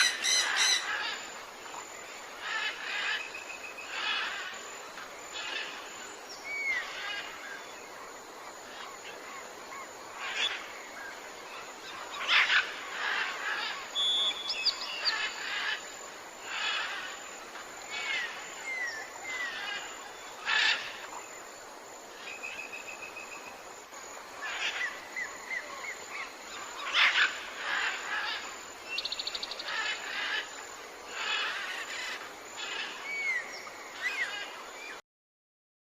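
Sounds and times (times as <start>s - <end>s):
birds chirping and calling: 0.0s - 1.3s, 11.6s - 21.3s, 24.3s - 34.6s
steady background hiss: 0.0s - 35.0s
whistled bird glides: 11.8s - 15.8s.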